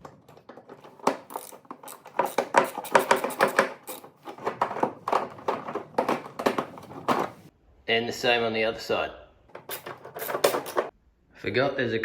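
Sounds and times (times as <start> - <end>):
hand tool clicking on bolt: 0.0 - 5.2.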